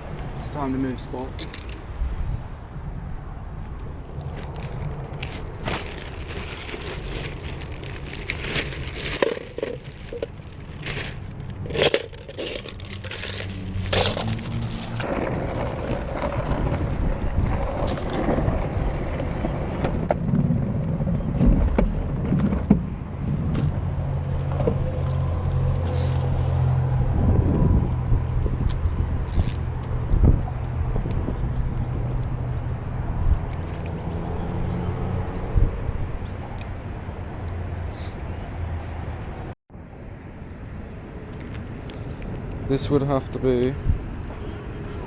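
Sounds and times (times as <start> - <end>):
car engine and road hum: 0.0 - 45.0
clattering handling noises: 1.3 - 1.9, 3.7 - 16.9.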